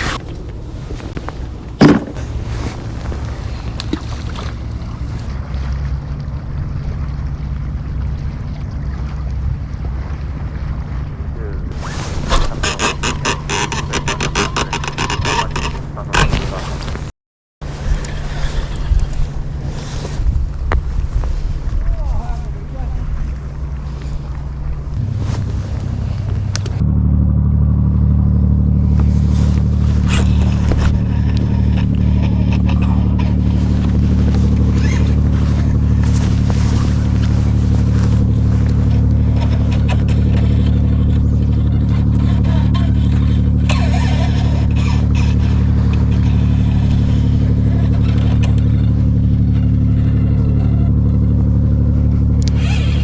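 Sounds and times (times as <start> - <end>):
engine running steadily: 0.0 - 12.7, 17.7 - 53.0
clicks and knocks: 1.0 - 2.2.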